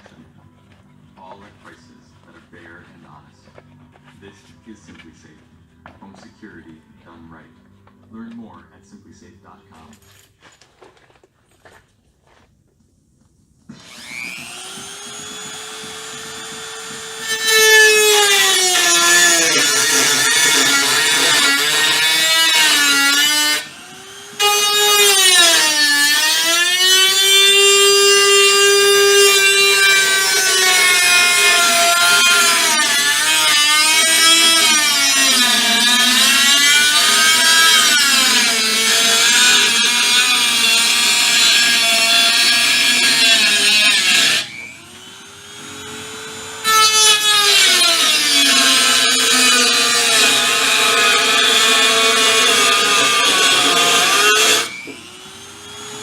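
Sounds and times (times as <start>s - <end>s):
power tool working sheet metal: 13.7s - 56.0s.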